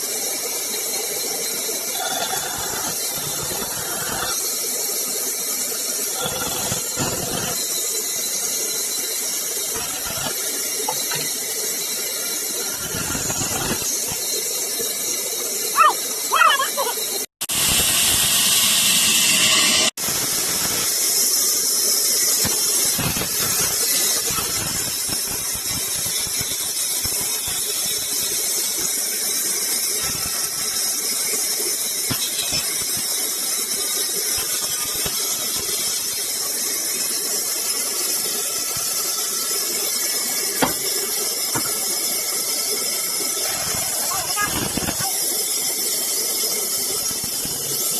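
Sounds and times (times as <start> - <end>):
saw cutting through wood: 1.2 - 4.8, 5.5 - 14.4, 15.8 - 21.0, 22.2 - 28.5, 30.0 - 42.0, 42.8 - 47.9.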